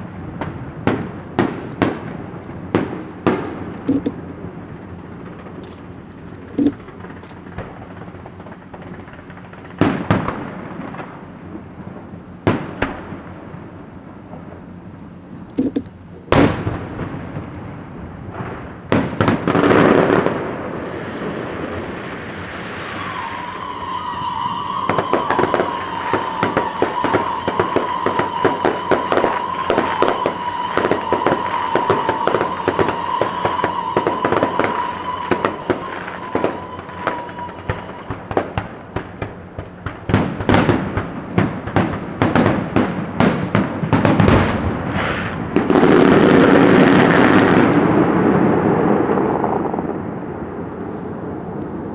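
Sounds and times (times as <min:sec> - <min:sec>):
firework bangs: 0:00.0 - 0:14.8, 0:15.6 - 0:51.9
fireworks crackling and popping: 0:00.0 - 0:51.9
firework whistle: 0:18.3 - 0:51.9.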